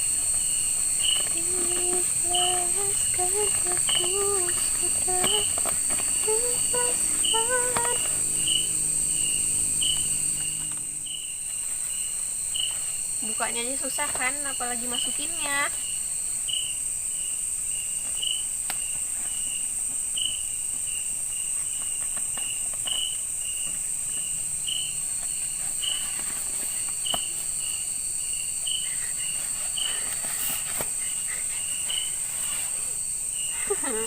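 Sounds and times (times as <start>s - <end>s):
faint clicks and rustles: 0.0s - 8.6s, 25.0s - 27.9s, 28.6s - 33.0s
crickets chirping: 0.0s - 34.0s
insects droning: 0.0s - 34.0s.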